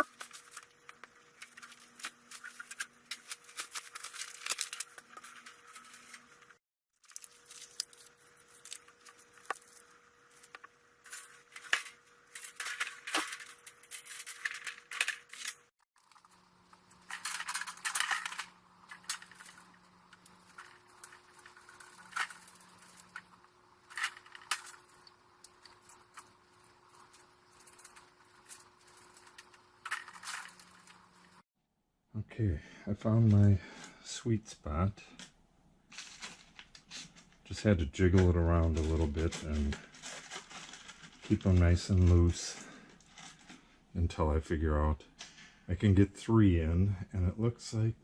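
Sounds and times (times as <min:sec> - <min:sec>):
metal screws clinking and scraping: 0:00.0 - 0:06.4, 0:07.0 - 0:31.4, 0:35.9 - 0:36.8, 0:38.7 - 0:43.7.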